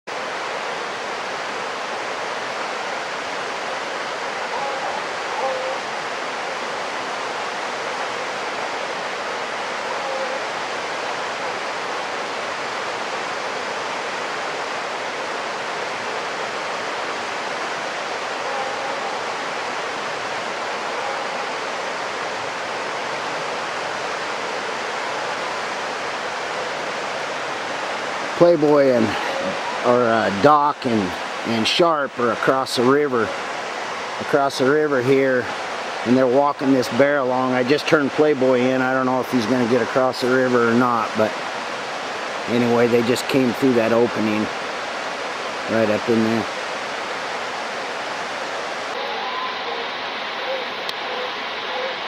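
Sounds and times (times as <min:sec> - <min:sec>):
river water rushing: 0:00.1 - 0:52.0
faint short calls: 0:04.3 - 0:06.0.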